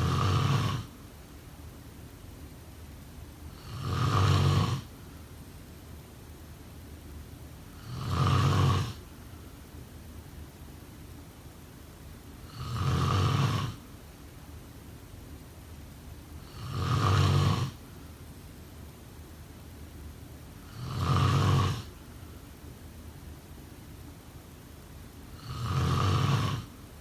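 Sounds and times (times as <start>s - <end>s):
person snoring: 0.0s - 0.9s, 3.6s - 4.9s, 7.8s - 9.0s, 12.5s - 13.8s, 16.4s - 17.8s, 20.7s - 21.9s, 25.4s - 26.7s.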